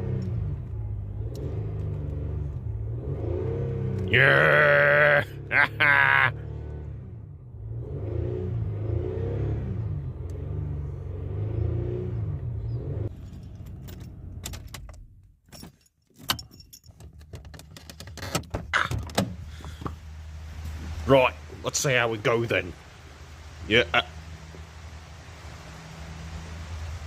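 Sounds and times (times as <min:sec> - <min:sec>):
keys jangling: 0:15.4 - 0:18.2.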